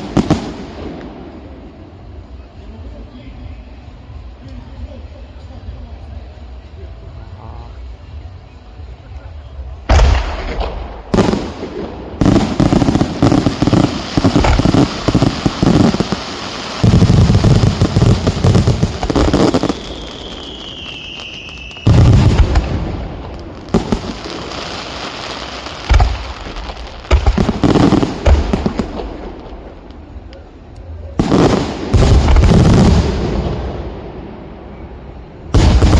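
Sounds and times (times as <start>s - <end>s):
fireworks bangs and crackling: 0.0s - 8.2s, 8.8s - 35.9s
heavy firework booms: 9.9s - 20.8s, 21.4s - 24.5s, 25.9s - 29.8s, 31.2s - 34.2s, 35.5s - 35.9s
falling firework whistle: 19.0s - 22.6s.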